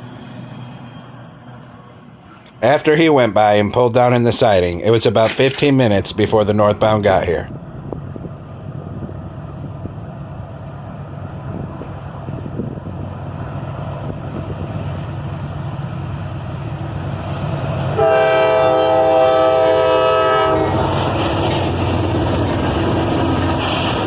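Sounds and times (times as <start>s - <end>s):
freight train wheel noise: 0.0s - 24.0s
locomotive engine: 0.0s - 24.0s
train horn chord: 18.0s - 21.0s.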